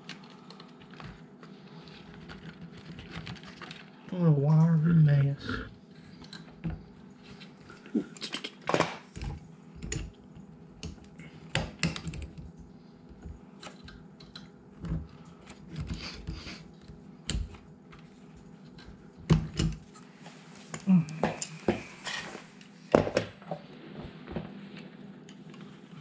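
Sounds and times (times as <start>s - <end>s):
hands handling wiring and plastic: 0.0s - 4.0s
faint steady hum: 0.0s - 26.0s.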